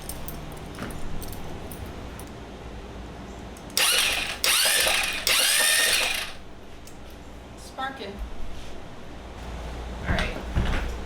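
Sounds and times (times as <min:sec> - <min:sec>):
scooter engine starter cranking: 0:03.8 - 0:06.4.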